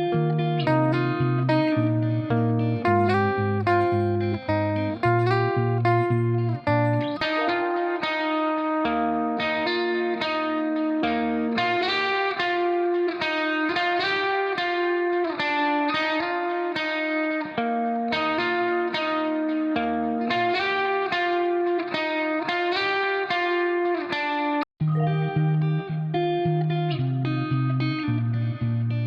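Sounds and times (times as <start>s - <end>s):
music of short pitched notes: 24.8s - 26.1s.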